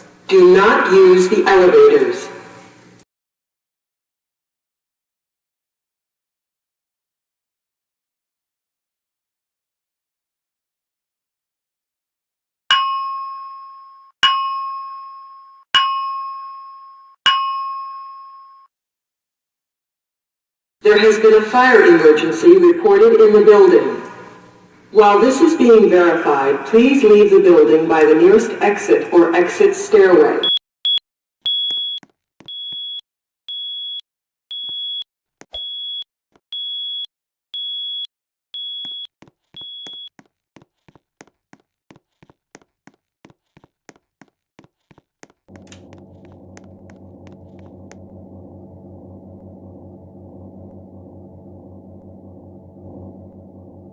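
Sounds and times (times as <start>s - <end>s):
electronic alarm bell strikes: 12.7s - 18.7s
electronic fire alarm beeping: 30.4s - 40.2s.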